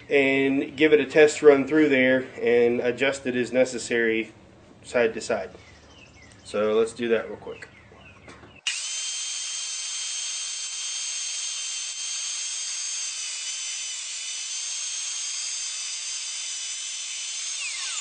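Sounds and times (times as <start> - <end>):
table saw whining: 8.3 - 18.0.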